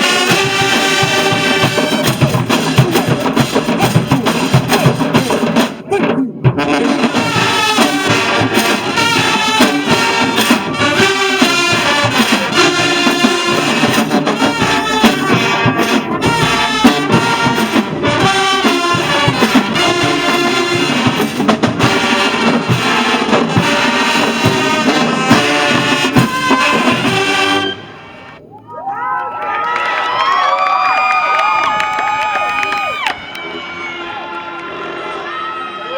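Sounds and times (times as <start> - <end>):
brass band playing: 0.0 - 28.4, 33.1 - 35.9
drums: 0.0 - 28.5.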